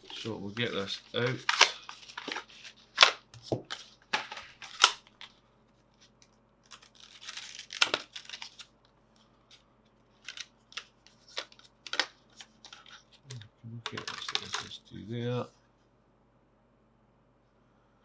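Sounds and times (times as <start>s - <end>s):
plastic packaging rustling: 0.0s - 5.4s, 6.0s - 8.7s, 10.1s - 14.8s
plastic packaging clicks and snaps: 1.3s - 2.4s, 4.1s - 5.3s, 6.6s - 8.7s, 10.2s - 14.7s.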